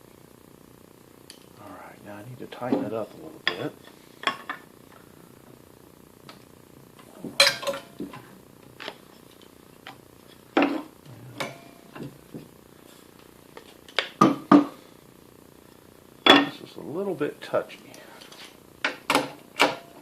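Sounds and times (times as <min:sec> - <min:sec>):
metal tools clinking on metal frame: 0:07.4 - 0:08.0.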